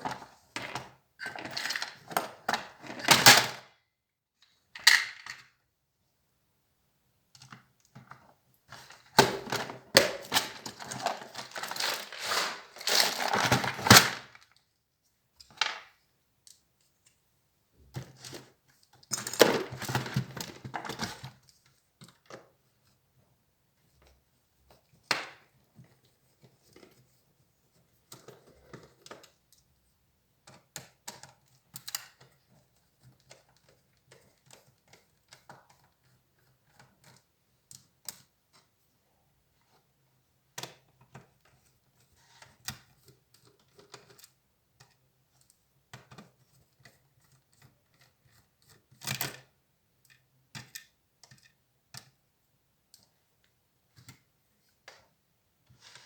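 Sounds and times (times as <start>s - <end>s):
laptop parts clicking and scraping: 9.5s - 14.0s.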